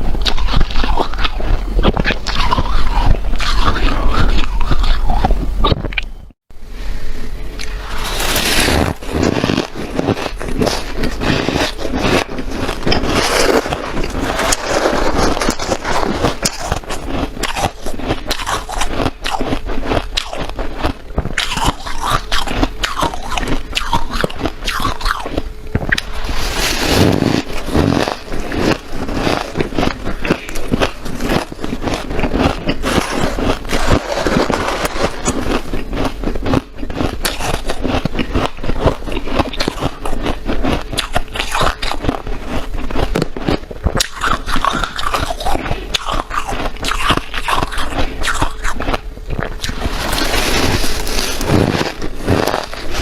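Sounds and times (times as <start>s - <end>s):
person chewing crunchy ice: 0.0s - 6.1s, 7.6s - 53.0s.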